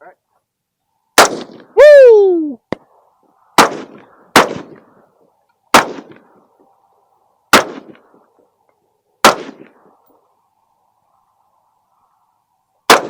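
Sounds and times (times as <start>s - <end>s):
rifle shots with echo: 1.2s - 1.7s, 3.6s - 4.9s, 5.7s - 6.3s, 7.5s - 8.1s, 9.2s - 9.8s.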